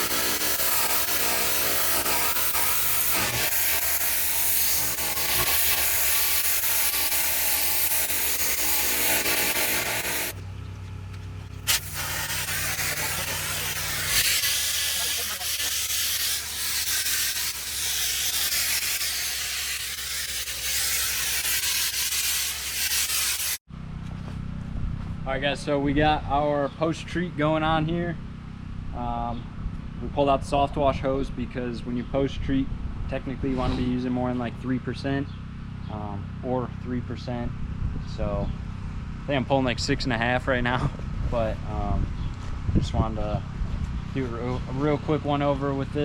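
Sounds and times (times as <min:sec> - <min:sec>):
pressure washer spraying: 0:00.0 - 0:10.4, 0:11.6 - 0:23.6
low running hum: 0:00.0 - 0:22.8.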